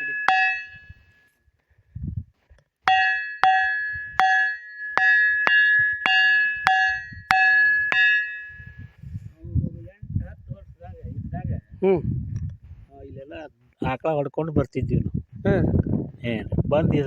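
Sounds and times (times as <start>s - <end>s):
stone striking ringing rock: 0.0s - 1.1s, 2.9s - 8.9s.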